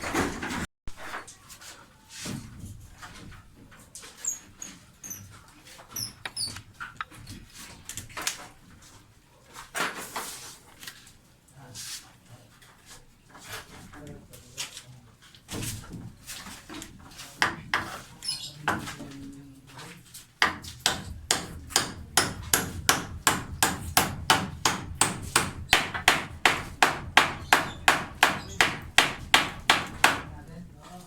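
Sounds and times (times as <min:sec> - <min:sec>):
hammer striking concrete: 0:20.4 - 0:30.4.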